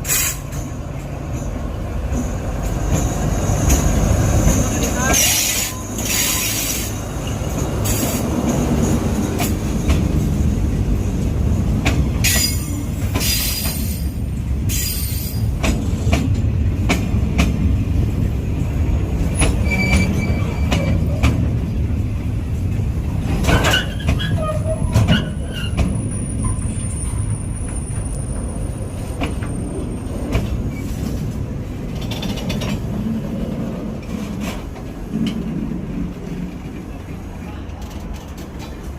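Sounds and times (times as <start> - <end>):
freight train rumbling past: 0.0 - 38.9
train wheel squeals: 2.9 - 9.5, 12.2 - 15.6, 19.2 - 21.4, 23.4 - 31.0
wheels clicking over rail joints: 22.5 - 38.9.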